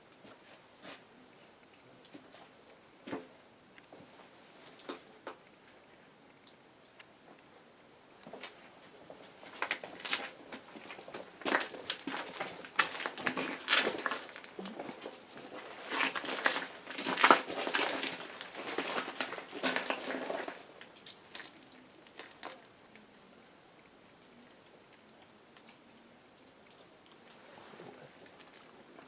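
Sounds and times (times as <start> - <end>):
crinkling and crunching: 9.4 - 23.0.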